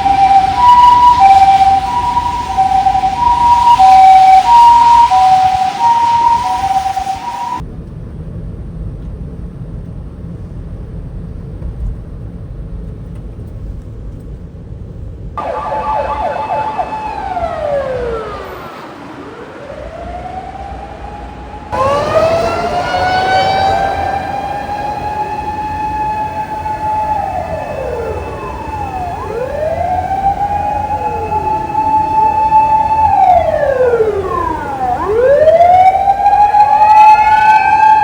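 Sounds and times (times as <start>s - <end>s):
two-tone hi-lo siren: 0.0s - 7.6s, 15.4s - 38.0s
wailing siren: 0.0s - 7.6s, 15.4s - 38.0s
low traffic rumble: 0.0s - 38.0s.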